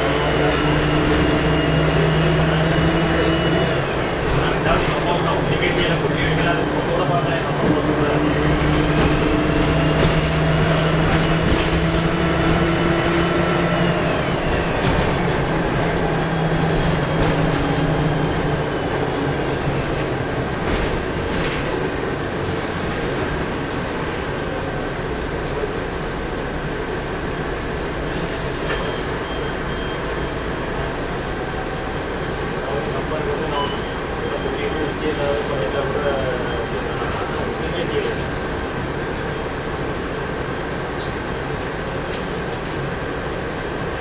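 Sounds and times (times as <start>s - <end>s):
diesel bus engine under load: 0.0s - 44.0s
rattles and knocks from bus: 4.0s - 6.5s, 7.6s - 18.6s, 19.4s - 22.4s, 40.9s - 44.0s.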